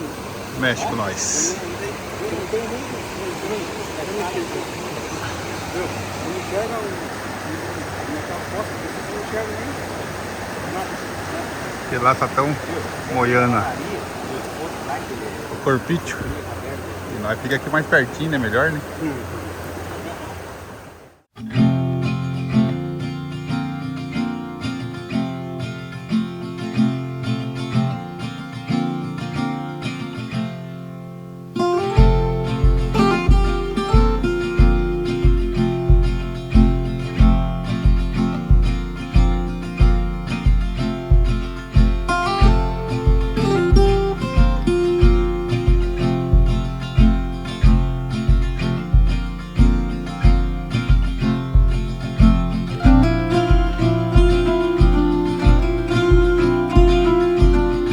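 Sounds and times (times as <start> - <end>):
strummed acoustic guitar: 21.3 - 57.9
steady bass beat: 32.0 - 57.9.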